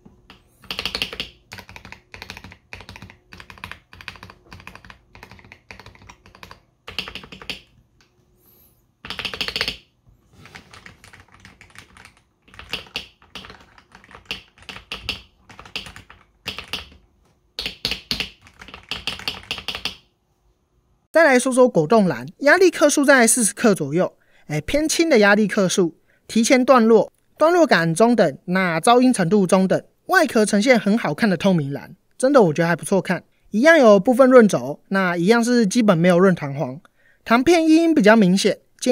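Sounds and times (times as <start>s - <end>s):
mechanical keyboard typing: 0.3s - 7.7s, 9.0s - 20.0s.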